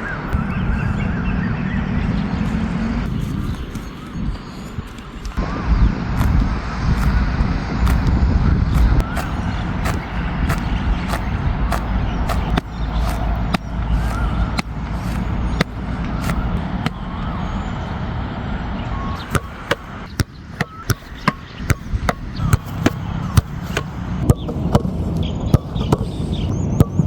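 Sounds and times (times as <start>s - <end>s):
steady low rumble: 5.1s - 27.0s
sharp slaps or knocks: 8.8s - 17.0s.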